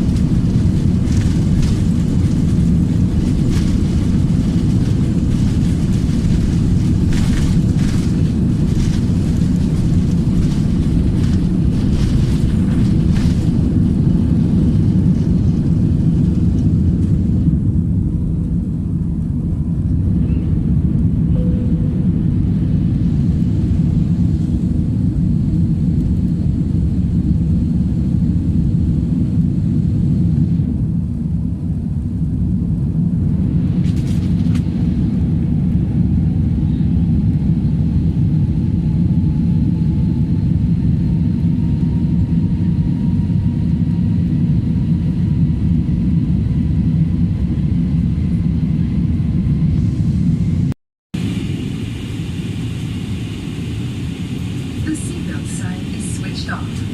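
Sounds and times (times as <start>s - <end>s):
jet engine cabin rumble: 0.0s - 56.9s.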